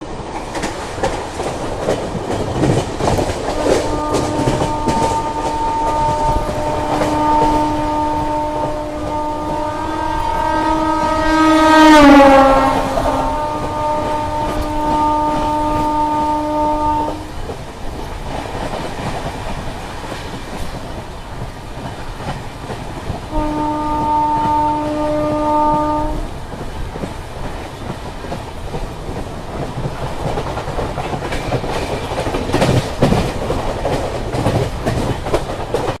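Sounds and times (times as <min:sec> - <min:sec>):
train wheels clattering on rails: 0:00.0 - 0:36.0
locomotive horn blast: 0:03.5 - 0:17.4, 0:23.3 - 0:26.3.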